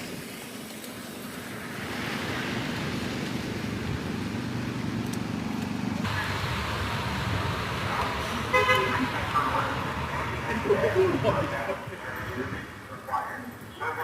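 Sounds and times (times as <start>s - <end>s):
road and rain noise: 0.0s - 14.0s
vehicle low rumble: 0.1s - 13.9s.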